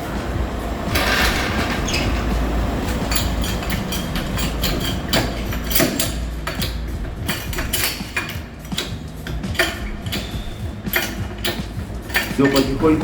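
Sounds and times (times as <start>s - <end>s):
car jack being worked: 0.0s - 13.0s
steady low rumble: 0.0s - 13.0s
metallic clicks of hand tools: 2.9s - 13.0s.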